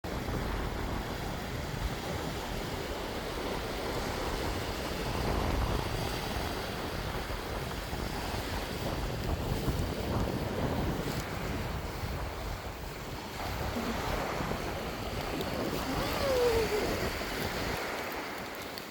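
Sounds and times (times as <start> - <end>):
wind buffeting microphone: 0.0 - 18.9
sea surf: 0.1 - 18.9.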